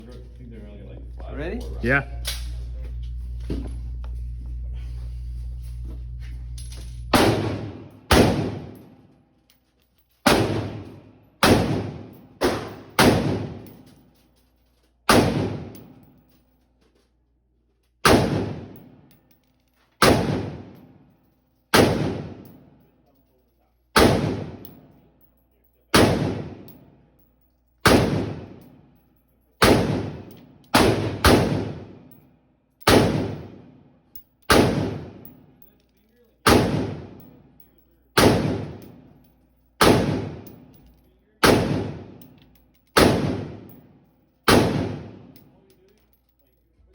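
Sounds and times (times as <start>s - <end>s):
rifle shots with ringing echo: 7.0s - 9.1s, 10.2s - 14.0s, 15.1s - 16.1s, 18.0s - 19.1s, 20.0s - 21.0s, 21.7s - 22.8s, 24.0s - 25.0s, 25.9s - 27.0s, 27.8s - 28.9s, 29.6s - 32.2s, 32.8s - 35.7s, 36.4s - 45.7s.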